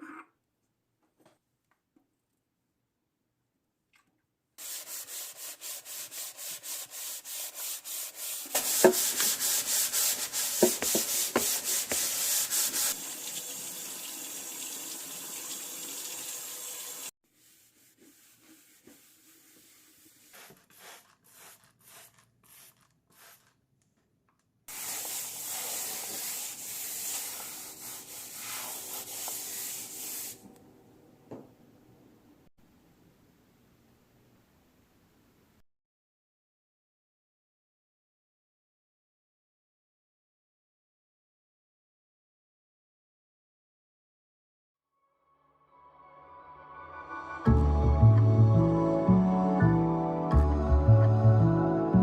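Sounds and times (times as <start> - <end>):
steady hiss: 24.7 - 30.4.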